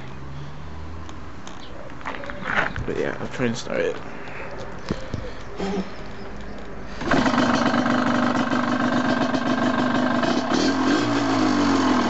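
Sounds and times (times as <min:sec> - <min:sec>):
motorcycle engine starting and idling: 0:06.4 - 0:12.0.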